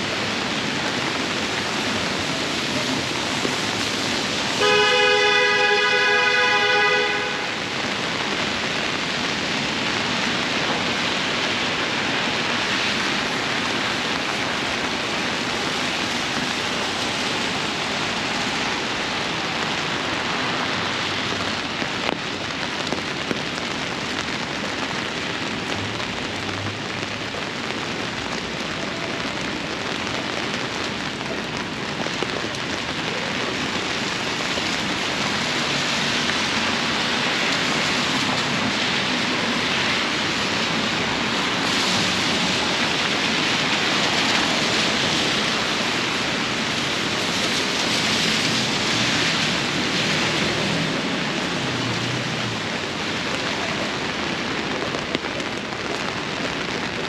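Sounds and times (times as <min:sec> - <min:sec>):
heavy rain on street: 0:00.0 - 0:57.0
vehicle horn blast: 0:04.6 - 0:07.6.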